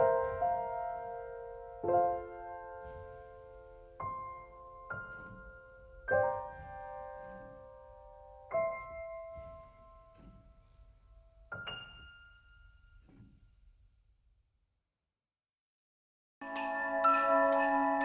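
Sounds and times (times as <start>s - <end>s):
slow solo piano: 0.0s - 13.4s.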